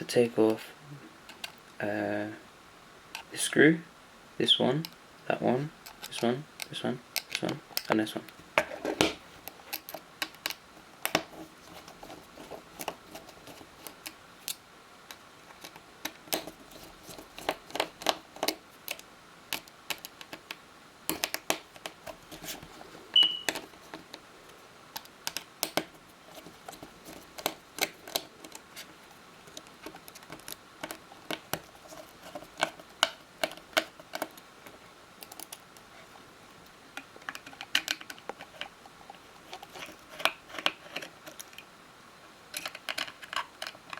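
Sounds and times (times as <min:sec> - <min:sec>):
high squeak: 0:23.2 - 0:23.5.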